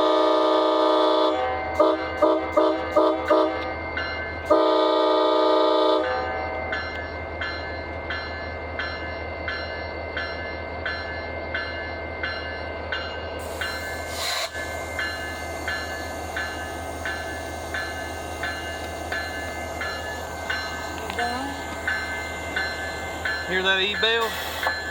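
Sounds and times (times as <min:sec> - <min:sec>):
train horn: 0:00.0 - 0:03.7, 0:04.5 - 0:06.4
locomotive bell ringing: 0:00.0 - 0:24.9.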